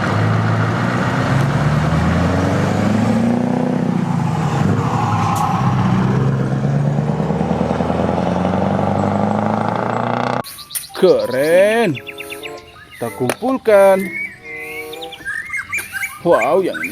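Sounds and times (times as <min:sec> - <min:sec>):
vehicle engine running: 0:00.0 - 0:10.7.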